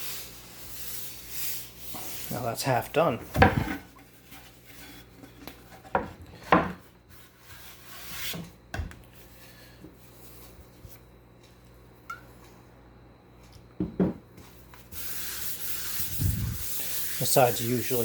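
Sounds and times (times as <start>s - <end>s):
cutting board knocking on hard surface: 13.8s - 14.2s
towel scrubbing wood: 15.0s - 18.0s.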